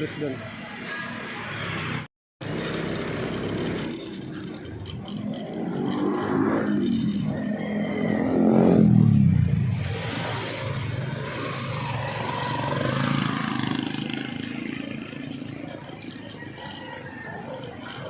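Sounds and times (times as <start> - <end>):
street traffic noise: 0.0 - 18.0
vehicle passing close by: 5.8 - 15.1.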